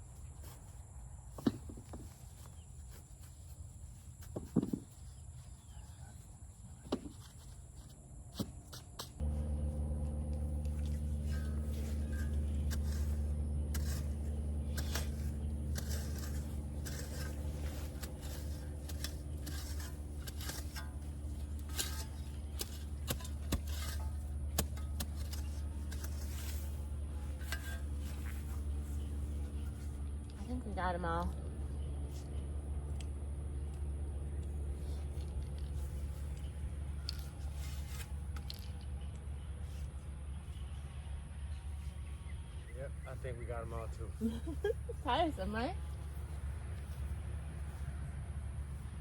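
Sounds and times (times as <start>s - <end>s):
low motor hum: 9.2s - 49.0s
digging clicks and scrapes: 10.7s - 28.6s.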